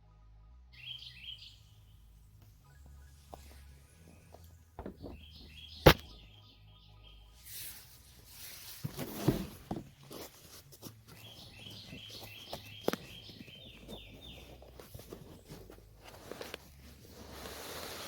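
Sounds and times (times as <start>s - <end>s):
small birds chirping: 0.8s - 7.5s, 10.1s - 18.0s
cardboard box knocks and rustling: 8.8s - 10.6s.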